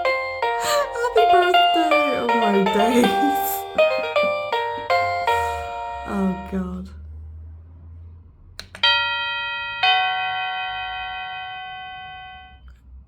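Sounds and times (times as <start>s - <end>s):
two-note doorbell chime: 8.8s - 12.7s.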